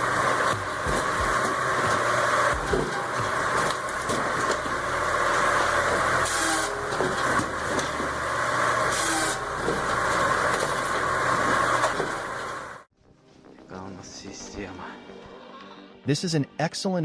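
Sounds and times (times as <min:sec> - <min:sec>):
engine and hydraulic drone: 0:00.0 - 0:12.9.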